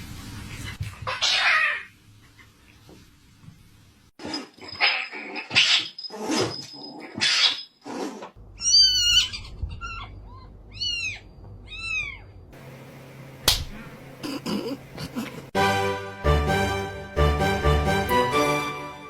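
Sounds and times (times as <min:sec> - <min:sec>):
cat meowing: 0:08.6 - 0:12.4.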